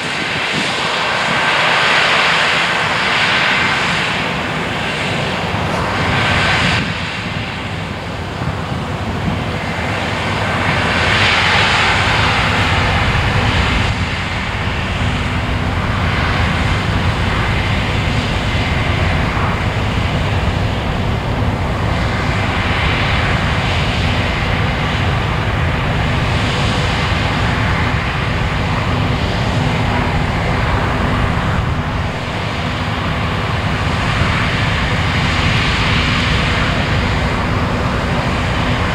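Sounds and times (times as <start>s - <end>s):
combine harvester running: 8.1s - 38.9s.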